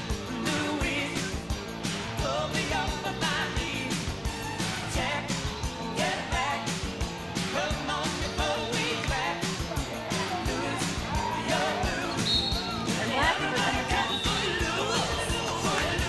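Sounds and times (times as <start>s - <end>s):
steady drum beat: 0.0s - 16.0s
person singing: 0.3s - 1.4s, 2.1s - 4.1s, 7.5s - 16.0s.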